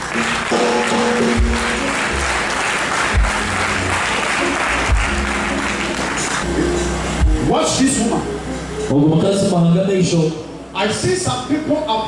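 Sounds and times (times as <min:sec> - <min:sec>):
congregation applauding: 0:00.0 - 0:06.6
background music with bass line: 0:00.1 - 0:09.3.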